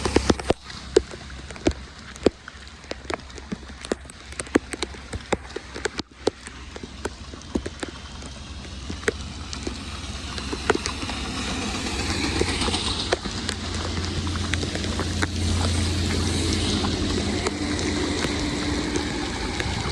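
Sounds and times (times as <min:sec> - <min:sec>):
rain falling: 0:00.0 - 0:19.9
steady low rumble: 0:00.0 - 0:19.9.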